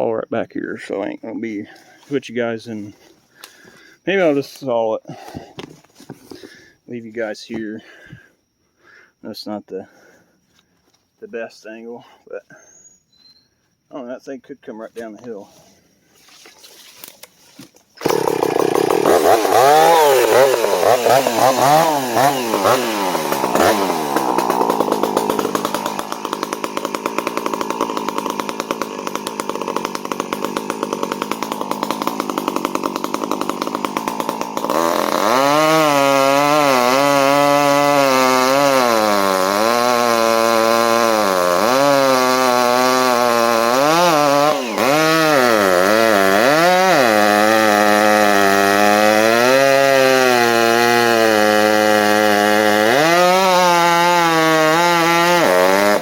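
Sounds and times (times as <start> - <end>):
chainsaw cutting wood: 18.0 - 56.0
chainsaw idling: 18.0 - 56.0.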